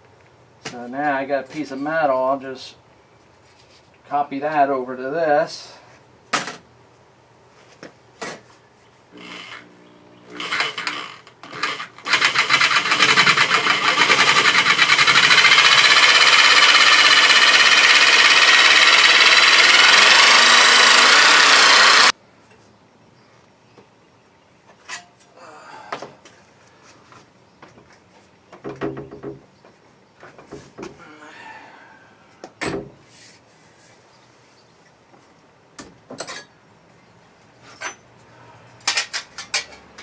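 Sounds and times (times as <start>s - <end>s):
power tool cutting sheet steel: 9.2s - 22.1s.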